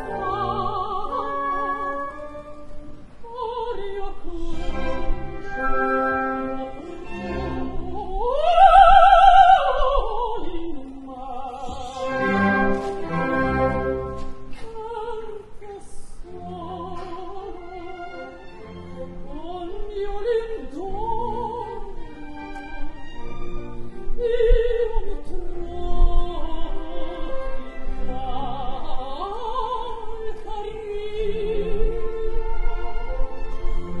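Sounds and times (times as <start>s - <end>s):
orchestra playing: 0.0s - 9.5s, 11.7s - 14.8s, 16.3s - 24.4s, 30.9s - 34.0s
operatic singing: 0.0s - 34.0s.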